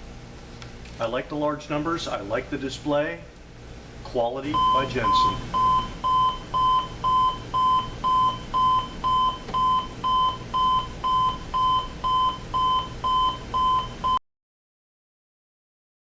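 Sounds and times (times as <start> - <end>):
alarm clock beeping: 4.6 - 14.2.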